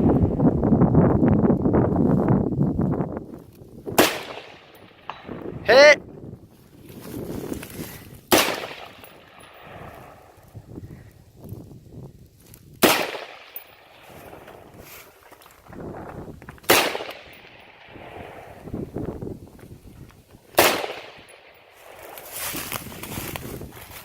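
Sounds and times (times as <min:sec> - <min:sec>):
rifle shots echoing: 0:04.0 - 0:05.6, 0:08.3 - 0:10.4, 0:12.8 - 0:14.8, 0:16.6 - 0:18.7, 0:20.5 - 0:22.3.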